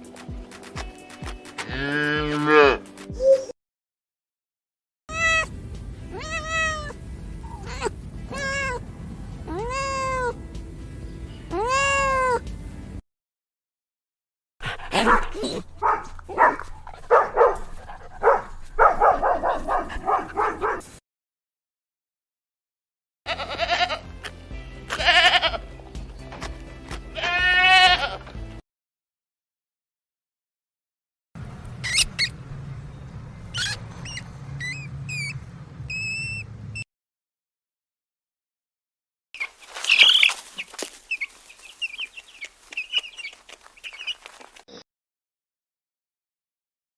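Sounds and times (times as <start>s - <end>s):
low hum: 5.1s - 11.5s
dog barking: 14.7s - 21.0s
mouse squeaking: 31.8s - 32.3s, 33.5s - 36.5s, 39.4s - 44.2s.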